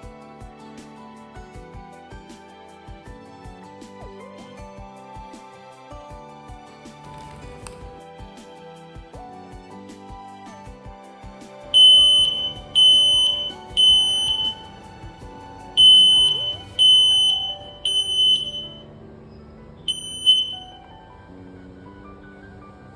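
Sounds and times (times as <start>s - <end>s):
background music: 0.0s - 22.9s
smoke alarm beeping: 11.8s - 14.8s, 15.8s - 18.8s, 19.9s - 20.8s.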